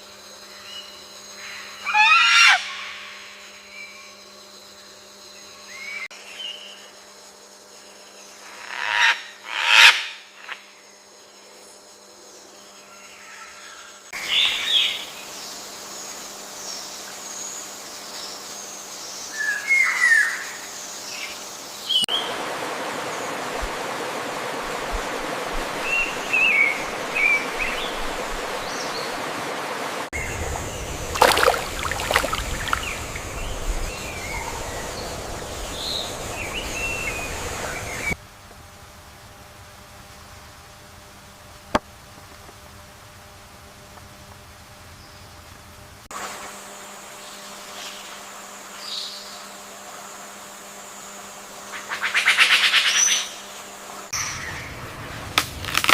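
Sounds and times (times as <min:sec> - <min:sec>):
steady background hiss: 0:00.0 - 0:55.9
loud sweeping bird call: 0:30.2 - 0:38.2.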